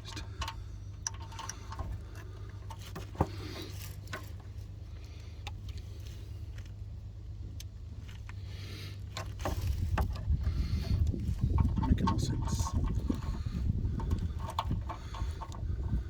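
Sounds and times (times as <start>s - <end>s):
steady low hum: 0.0s - 16.0s
low rumble: 5.6s - 16.0s.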